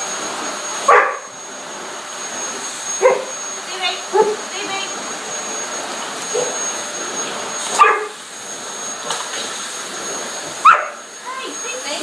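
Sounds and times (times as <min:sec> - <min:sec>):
vacuum cleaner running: 0:00.0 - 0:12.0
dog barking: 0:00.9 - 0:01.3, 0:03.0 - 0:03.3, 0:04.1 - 0:04.4, 0:06.3 - 0:06.6, 0:07.8 - 0:08.2, 0:10.6 - 0:11.0.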